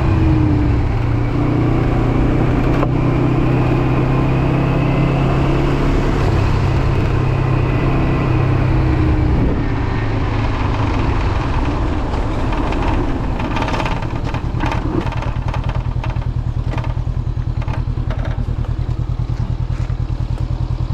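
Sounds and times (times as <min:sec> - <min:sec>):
motorcycle engine idling: 0:08.3 - 0:20.9
loose windshield rattling: 0:10.4 - 0:20.0.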